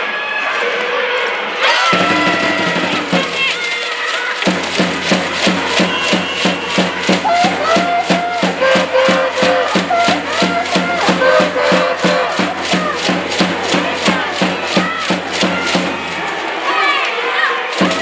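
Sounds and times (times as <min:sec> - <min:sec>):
drums beating steady rhythm: 0:01.8 - 0:17.0, 0:17.7 - 0:18.0
crowd chanting in unison: 0:04.4 - 0:18.0.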